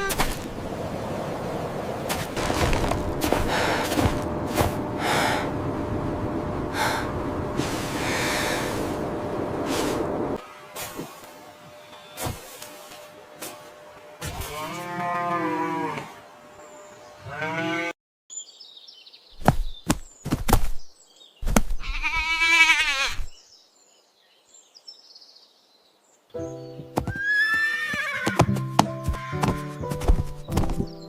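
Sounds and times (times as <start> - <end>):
music: 26.4 - 31.0.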